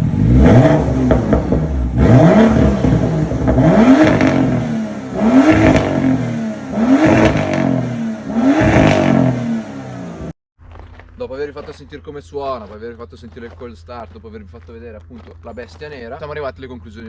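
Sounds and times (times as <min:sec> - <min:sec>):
car engine revving: 0:00.0 - 0:11.9.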